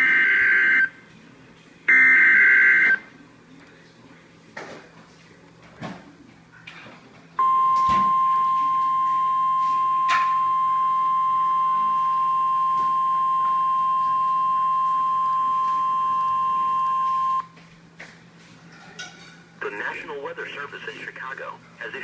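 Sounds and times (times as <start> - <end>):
loud steady warning beep: 1.9 - 3.1, 7.4 - 17.5.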